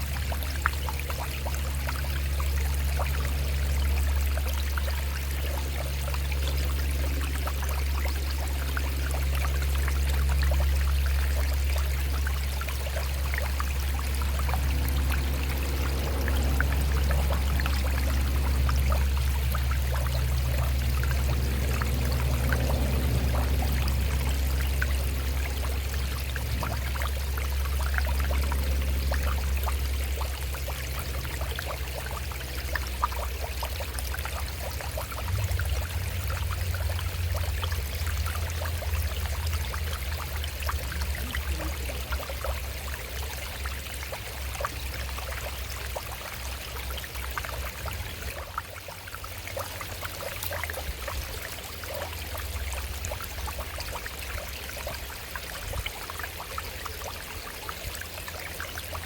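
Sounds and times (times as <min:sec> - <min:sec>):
low rumble: 0:00.0 - 0:46.3
stream splashing over rocks: 0:00.0 - 0:59.0.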